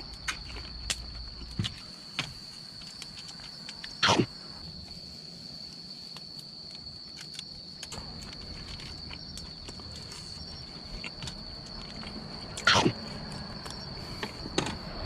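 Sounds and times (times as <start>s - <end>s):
insects trilling: 0.0s - 15.0s.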